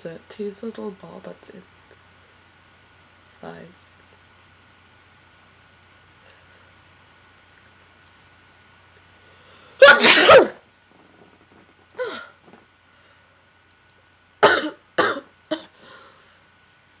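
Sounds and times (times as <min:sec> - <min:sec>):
person sneezing: 0:09.8 - 0:10.6, 0:14.4 - 0:15.8.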